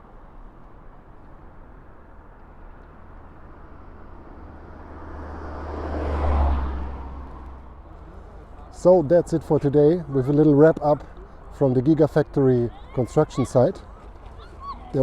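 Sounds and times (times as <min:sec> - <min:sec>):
low traffic rumble: 0:00.0 - 0:15.0
vehicle driving past: 0:03.1 - 0:09.4.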